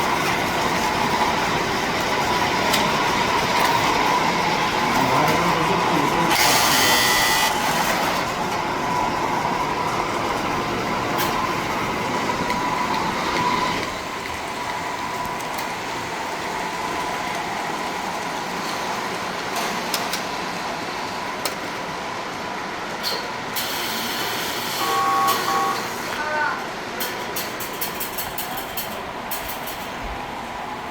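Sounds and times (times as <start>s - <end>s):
model train motors whirring: 0.2s - 20.9s.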